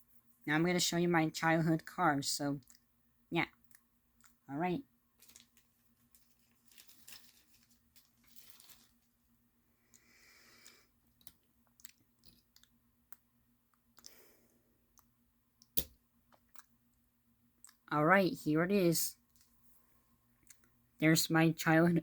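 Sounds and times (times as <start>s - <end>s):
plastic packaging crinkling: 5.1s - 9.3s.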